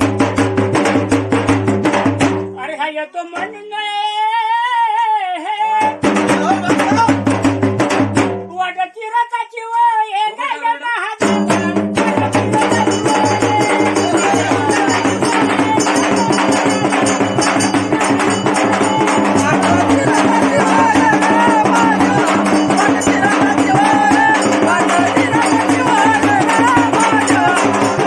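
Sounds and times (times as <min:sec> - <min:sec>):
fast dense percussion: 0:00.0 - 0:02.8, 0:05.8 - 0:08.6, 0:11.2 - 0:28.0
wavering melody: 0:12.6 - 0:28.0.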